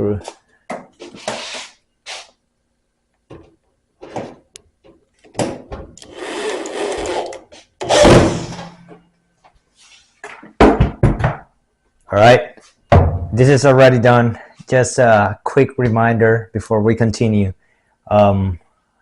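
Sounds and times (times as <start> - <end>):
power drill driving screws into metal: 6.0 - 8.6.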